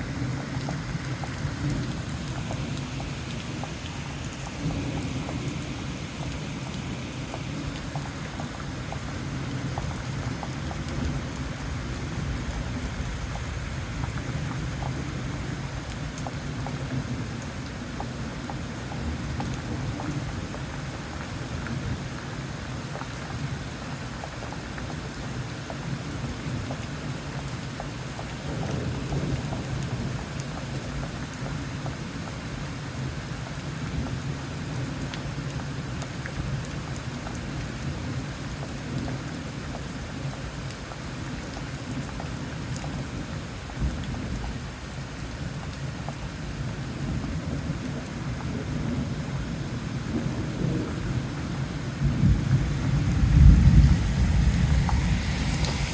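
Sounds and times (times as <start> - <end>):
steady rain: 0.0 - 55.9
rolling thunder: 50.0 - 55.9
heavy thunder thump: 52.0 - 55.9.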